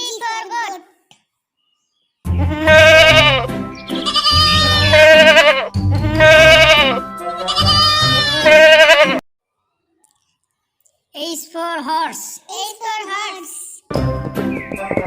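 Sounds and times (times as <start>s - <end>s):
goat bleating: 2.3s - 9.2s.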